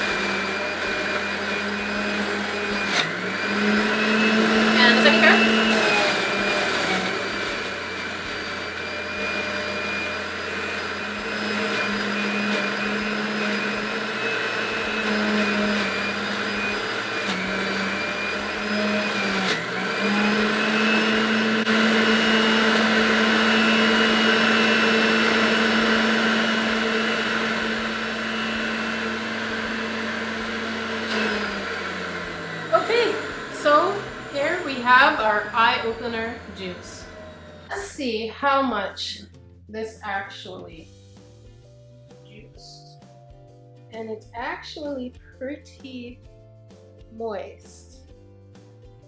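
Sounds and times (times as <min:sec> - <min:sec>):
juicer motor humming: 0:00.0 - 0:38.0.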